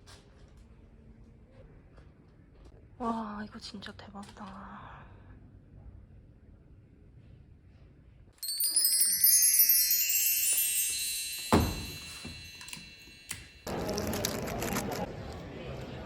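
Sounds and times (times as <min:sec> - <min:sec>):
bar chimes ringing cascade: 0:08.4 - 0:13.7
dull thump: 0:11.5 - 0:12.5.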